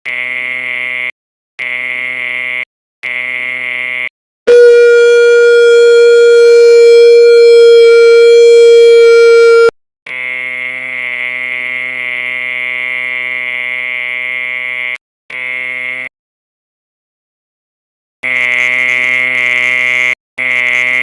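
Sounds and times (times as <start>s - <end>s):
harsh electronic buzzer: 4.5s - 9.7s
steady alarm tone: 4.5s - 9.7s.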